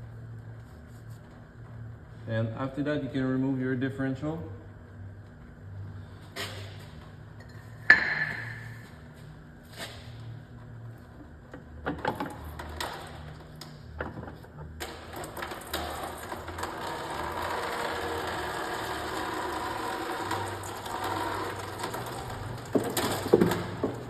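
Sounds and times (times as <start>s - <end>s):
steady mechanical whirr: 6.9s - 24.0s.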